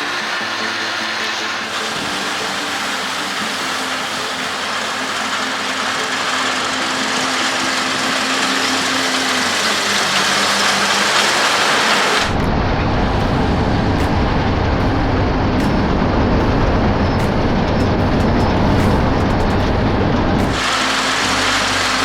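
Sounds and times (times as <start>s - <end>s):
combine harvester running: 0.0s - 22.0s
faint hum: 12.0s - 22.0s.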